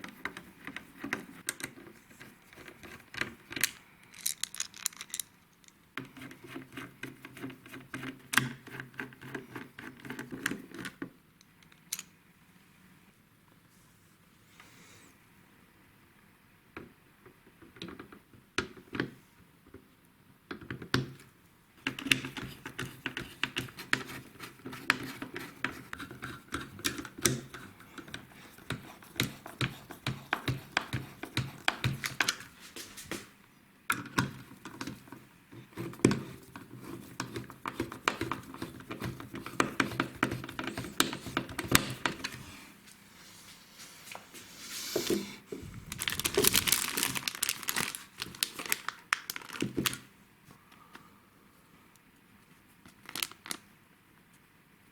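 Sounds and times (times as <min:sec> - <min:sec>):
faint steady hum: 0:00.0 - 0:54.9
hard plastic parts clicking and tapping: 0:20.5 - 0:32.5, 0:33.9 - 0:42.4.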